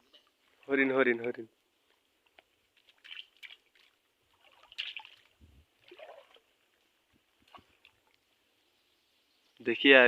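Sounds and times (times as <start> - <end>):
shallow water trickling: 1.7 - 8.9.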